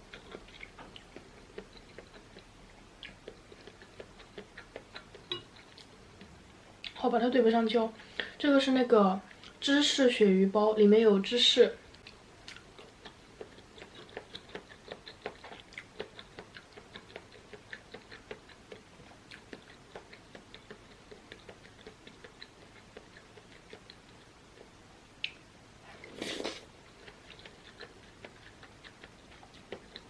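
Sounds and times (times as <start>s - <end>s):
wet chewing mouth clicks: 0.0s - 7.0s, 11.9s - 30.0s.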